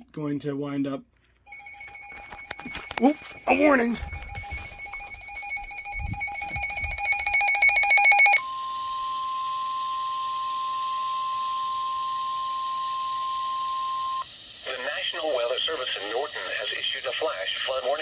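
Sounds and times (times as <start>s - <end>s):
alert alarm beeping: 1.5s - 8.7s
steady high alarm tone: 1.5s - 18.0s.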